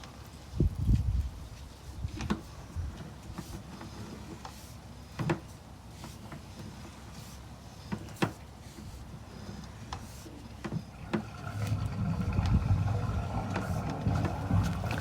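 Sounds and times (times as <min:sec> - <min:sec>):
light clicks and knocks in a pipe: 0:00.9 - 0:15.0
toilet flush rushing down a drain: 0:10.9 - 0:15.0.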